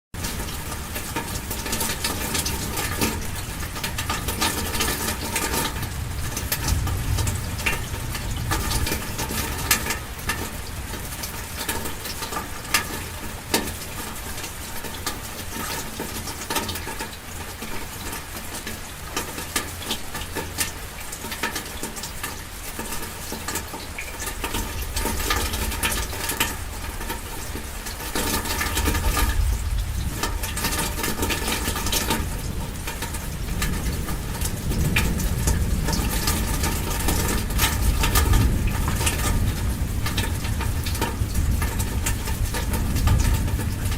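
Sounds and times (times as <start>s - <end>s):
rain pattering on car roof: 0.1s - 43.9s
low rumble: 5.8s - 10.0s.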